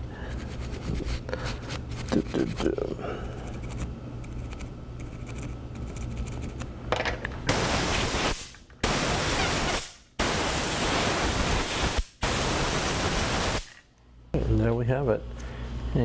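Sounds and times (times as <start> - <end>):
toothbrush scrubbing circuit board: 0.4 - 2.8, 3.4 - 6.6
air blasts hissing: 7.5 - 13.8.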